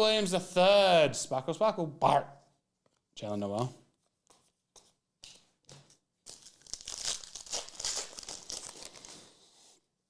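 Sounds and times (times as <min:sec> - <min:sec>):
foil wrapper tearing and crinkling: 0:06.2 - 0:09.4.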